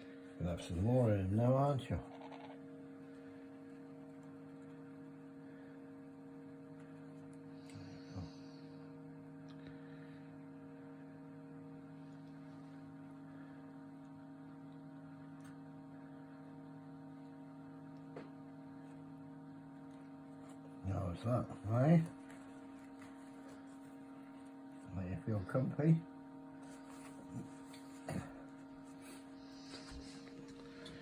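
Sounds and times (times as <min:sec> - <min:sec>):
low electrical hum: 0:00.0 - 0:31.0.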